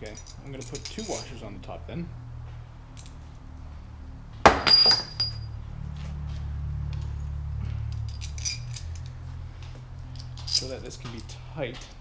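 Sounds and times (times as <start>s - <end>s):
metal tool clattering: 4.5s - 5.5s.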